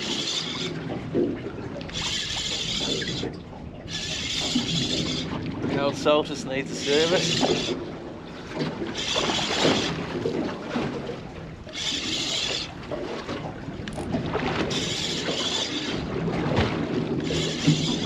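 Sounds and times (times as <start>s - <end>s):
fishing reel gritty whirr: 0.0s - 0.9s, 1.9s - 5.4s, 6.7s - 7.8s, 8.9s - 10.3s, 11.7s - 12.8s, 14.6s - 18.0s
water against boat: 0.0s - 18.0s
wind: 0.0s - 18.0s
person speaking: 5.8s - 7.4s.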